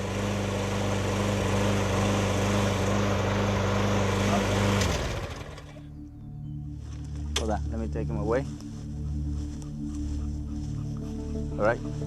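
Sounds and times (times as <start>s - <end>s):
lawnmower engine winding down: 0.0s - 5.9s.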